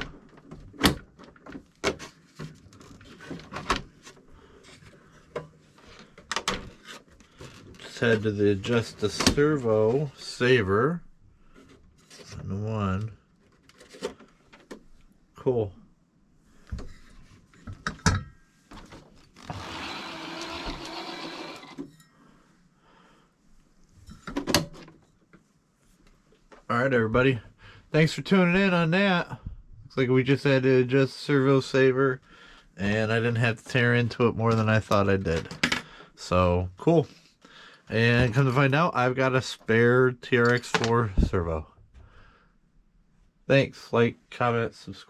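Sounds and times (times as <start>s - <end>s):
small electric motor whirring: 19.4s - 21.8s.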